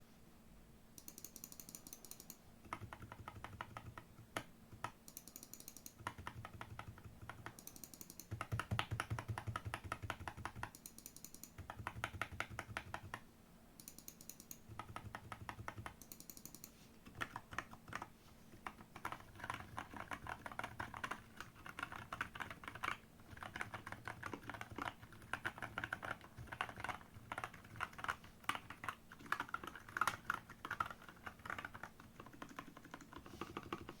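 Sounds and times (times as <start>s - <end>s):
mechanical keyboard typing: 1.0s - 13.2s, 13.8s - 34.0s.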